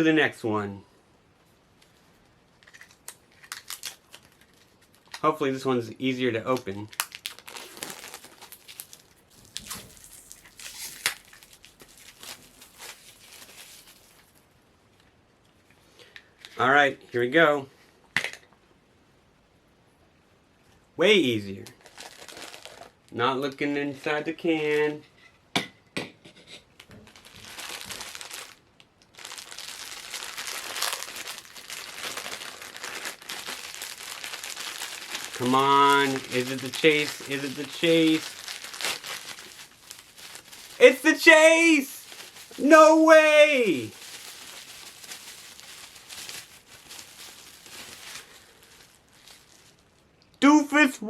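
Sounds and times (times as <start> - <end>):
plastic wrapping crinkling and tearing: 2.6 - 5.3, 6.5 - 14.5, 21.6 - 23.1, 26.8 - 50.2.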